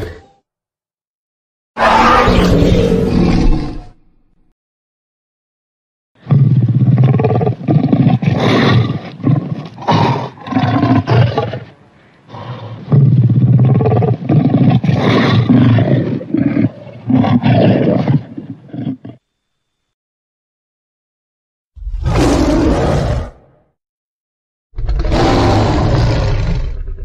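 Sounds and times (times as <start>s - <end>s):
monster roar: 1.8s - 4.0s, 21.8s - 23.5s, 24.8s - 27.0s.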